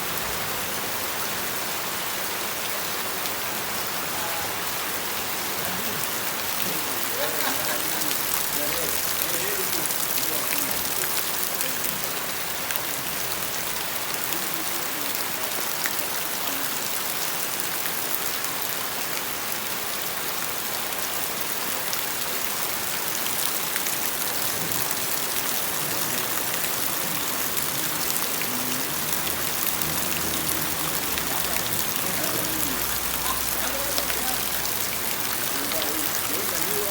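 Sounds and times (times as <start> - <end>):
steady rain hiss: 0.0 - 36.9
raindrops ticking: 4.5 - 18.5, 20.9 - 36.9.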